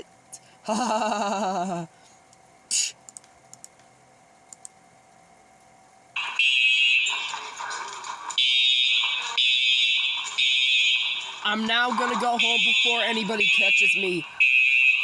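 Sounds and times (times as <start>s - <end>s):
fire alarm ringing: 6.2s - 15.0s.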